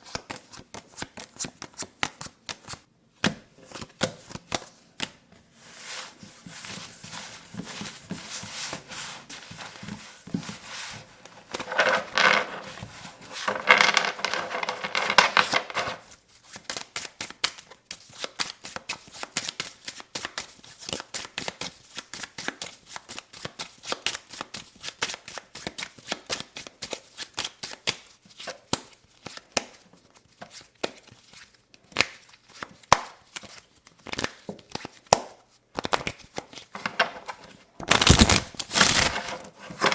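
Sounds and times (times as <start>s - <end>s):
playing cards shuffling: 10.4s - 16.1s, 35.8s - 39.9s.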